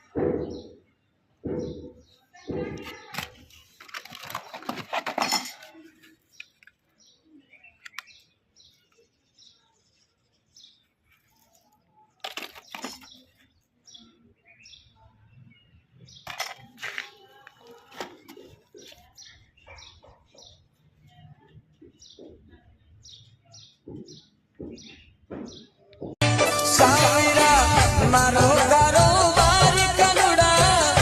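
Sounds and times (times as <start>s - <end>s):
clattering rustling noise: 2.7s - 6.6s, 12.2s - 13.5s, 16.2s - 19.1s.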